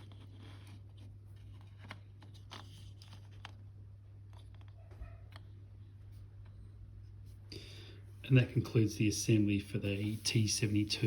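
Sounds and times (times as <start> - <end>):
plastic parts clicking and scraping: 0.0 - 6.7.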